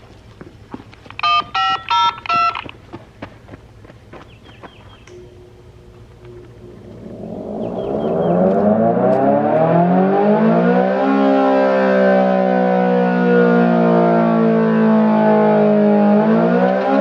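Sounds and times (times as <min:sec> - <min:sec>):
warning siren wailing: 0:05.1 - 0:17.0.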